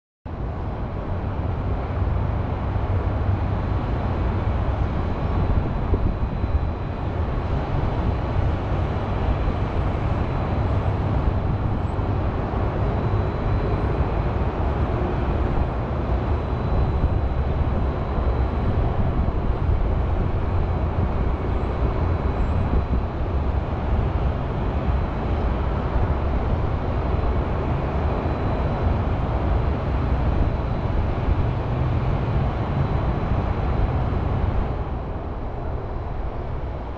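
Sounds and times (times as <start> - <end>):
distant highway traffic hum: 0.3 - 36.9.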